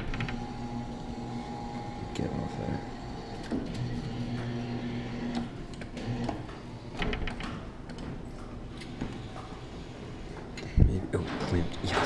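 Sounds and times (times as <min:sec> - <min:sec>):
claw machine motor humming: 0:00.0 - 0:07.0.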